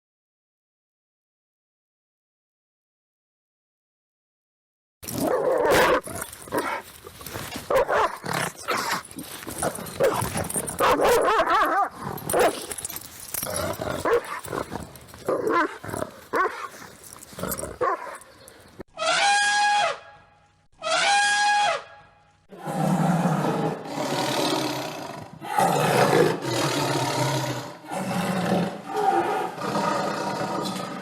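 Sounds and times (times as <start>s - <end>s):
dog barking: 10.8s - 12.6s.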